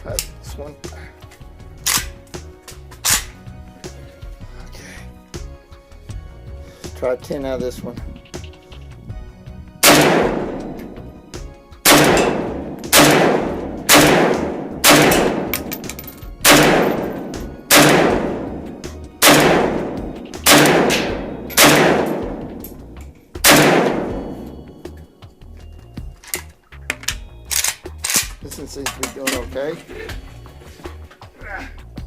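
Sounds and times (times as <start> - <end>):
rifle shots with echo: 9.8 - 11.2, 11.8 - 24.5.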